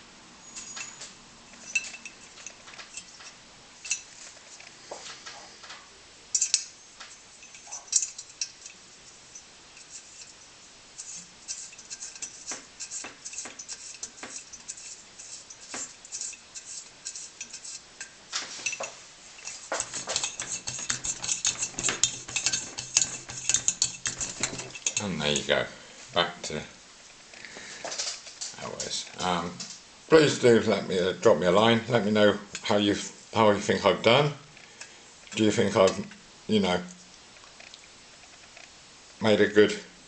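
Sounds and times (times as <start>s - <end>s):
low steady hum: 0.0s - 40.0s
metal clinks and taps: 0.5s - 4.1s, 6.3s - 10.4s, 15.5s - 25.5s.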